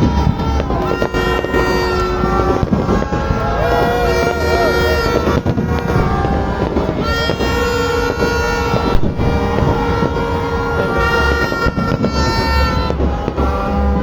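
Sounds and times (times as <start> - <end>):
horns blaring: 0.0 - 14.0
sharp bang: 4.3 - 13.0.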